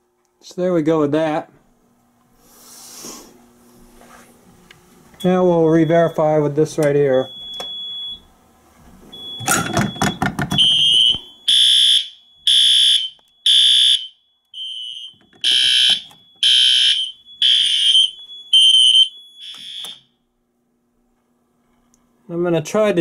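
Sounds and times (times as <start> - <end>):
fire alarm horn blasts: 7.2 - 8.2, 9.1 - 20.2.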